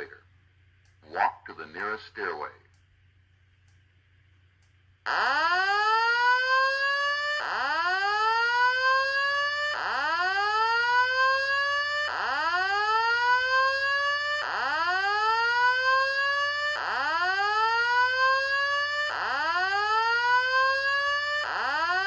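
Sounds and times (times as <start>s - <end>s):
fire alarm whoop tone: 5.1s - 22.0s.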